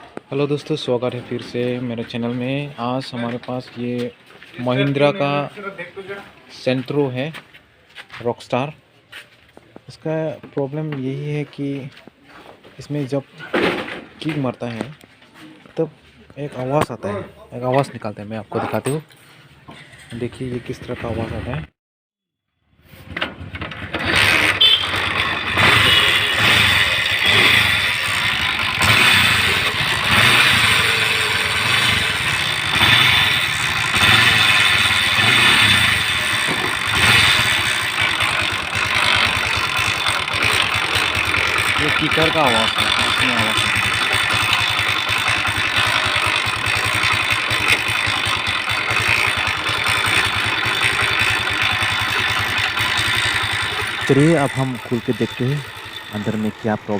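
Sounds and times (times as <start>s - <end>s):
kick-start mechanism noise: 23.0s - 56.9s
motorcycle engine running: 23.0s - 56.9s.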